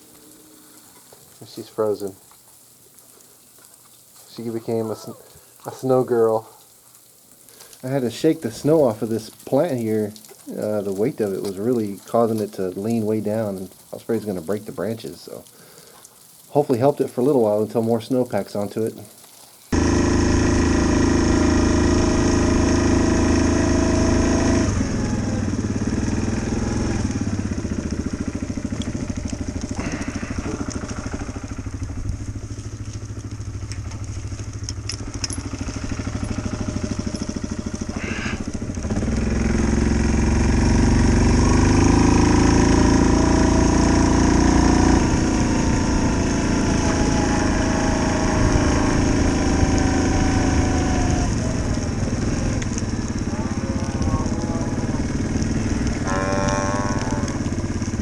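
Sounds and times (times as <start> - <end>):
atv engine running: 19.7 - 58.0.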